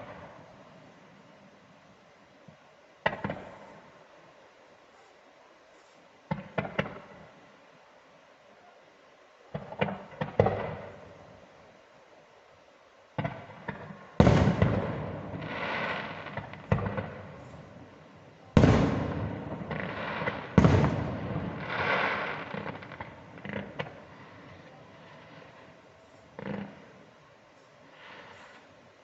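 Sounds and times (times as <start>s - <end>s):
fireworks bangs with crackling tails: 0.0s - 0.5s, 3.0s - 4.0s, 6.3s - 7.4s, 9.4s - 11.4s, 13.1s - 27.2s.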